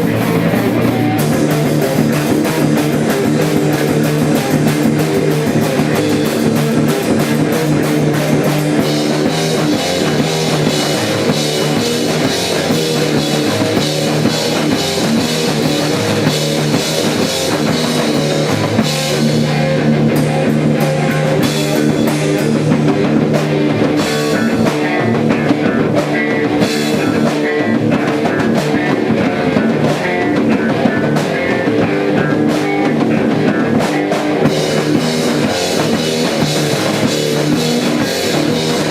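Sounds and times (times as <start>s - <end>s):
rock band playing: 0.0s - 38.9s.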